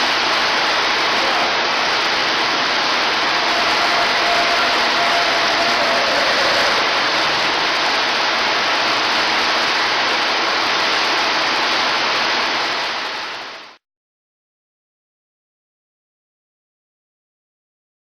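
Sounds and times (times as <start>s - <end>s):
loud rushing noise: 0.0s - 13.8s.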